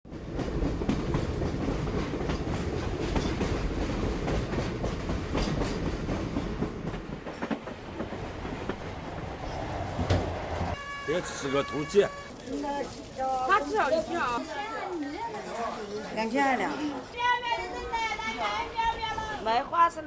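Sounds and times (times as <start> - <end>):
train wheels clattering on rails: 0.1 - 10.8.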